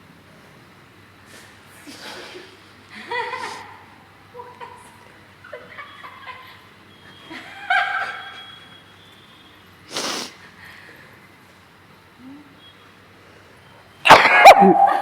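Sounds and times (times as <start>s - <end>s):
man sneezing: 14.1s - 14.9s.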